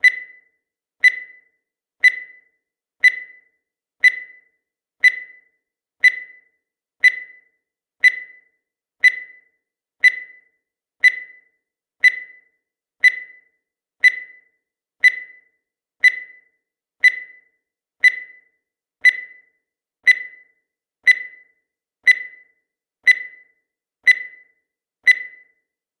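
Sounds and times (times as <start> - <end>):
short high beeps: 24.1 - 24.5, 25.1 - 25.5.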